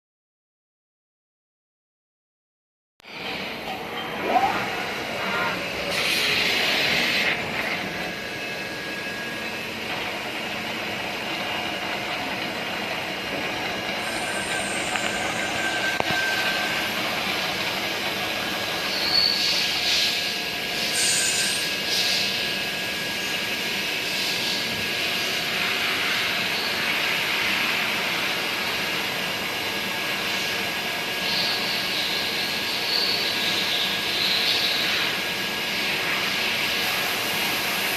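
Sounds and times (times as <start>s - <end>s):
machine tool running with whine: 3.1s - 37.9s.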